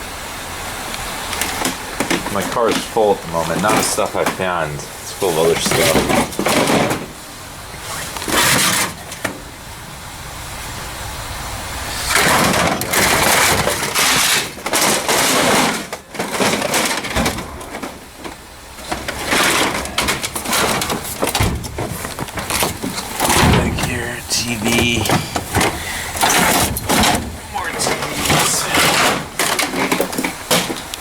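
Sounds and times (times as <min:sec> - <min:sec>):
junk crunching and rattling: 0:00.7 - 0:31.0.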